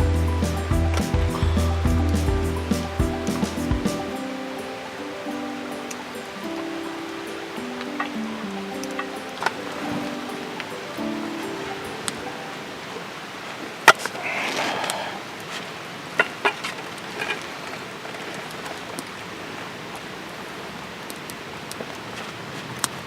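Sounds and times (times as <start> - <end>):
steady hiss: 0.0 - 16.2.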